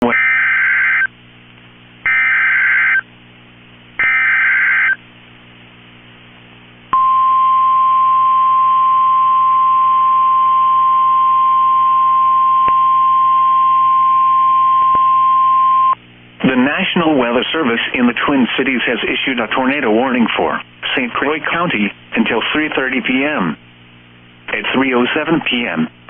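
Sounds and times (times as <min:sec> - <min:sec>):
steady warning alarm tone: 0:02.1 - 0:03.0, 0:04.0 - 0:05.0.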